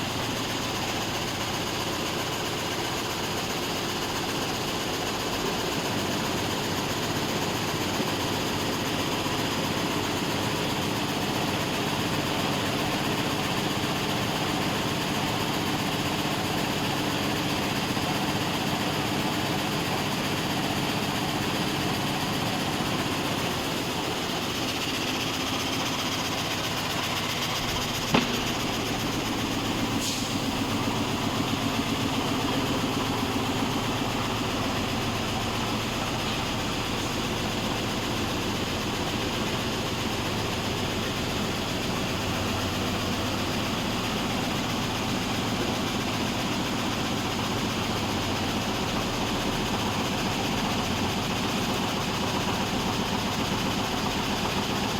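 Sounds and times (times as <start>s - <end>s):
sharp knock: 28.0s - 28.6s.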